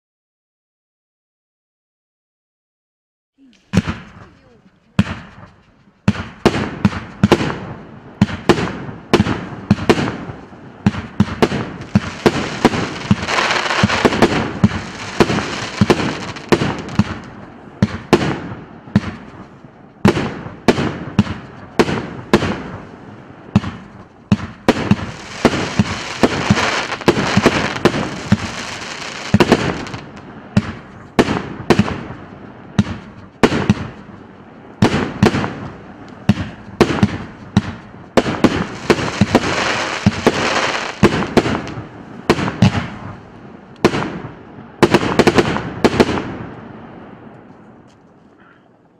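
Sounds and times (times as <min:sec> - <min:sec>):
firework shots and bursts: 0:03.5 - 0:43.2, 0:43.8 - 0:46.7
dense firework hiss: 0:10.9 - 0:17.4, 0:24.6 - 0:30.5, 0:38.2 - 0:41.8.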